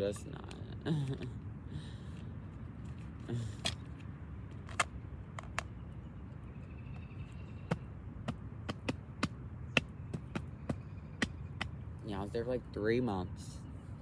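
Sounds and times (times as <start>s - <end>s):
sharp taps: 7.7s - 11.8s.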